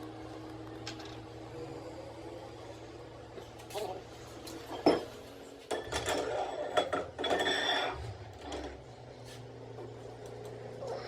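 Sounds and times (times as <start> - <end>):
metal clinking and scraping: 4.4 - 8.8.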